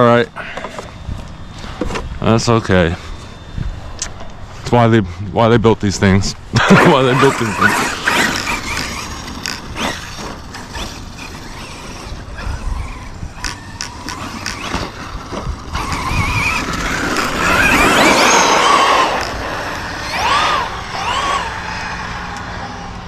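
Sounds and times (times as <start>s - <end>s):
electric motor whining: 6.6s - 23.0s
tyres on gravel: 6.7s - 22.9s.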